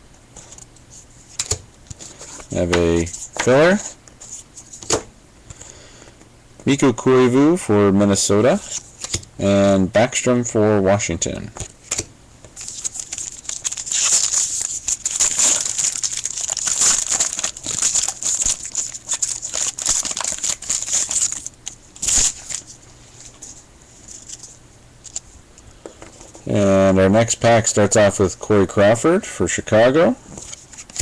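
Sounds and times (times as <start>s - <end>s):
wrapper crinkling and tearing: 12.6s - 23.5s
wrapper handling: 12.6s - 25.3s.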